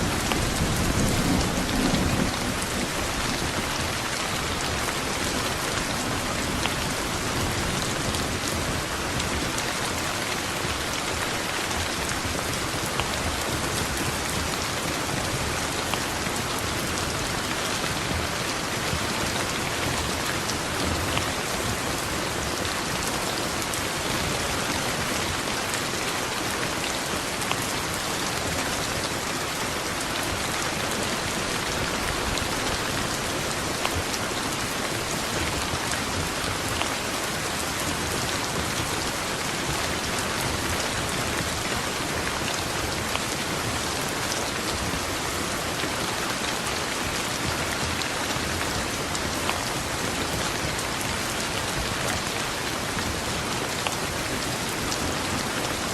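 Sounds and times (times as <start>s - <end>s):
thunder rumble: 0.0s - 3.9s
steady rain pouring: 0.0s - 55.9s.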